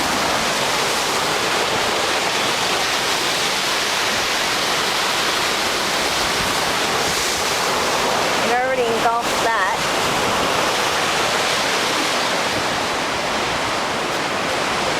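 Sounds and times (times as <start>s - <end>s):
heavy surf: 0.0s - 14.9s
wind: 0.0s - 14.9s.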